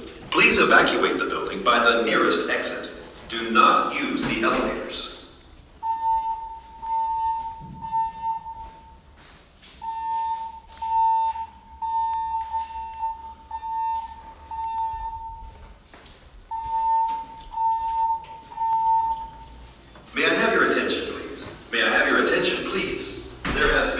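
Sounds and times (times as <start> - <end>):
fire alarm beeping: 0.0 - 23.9.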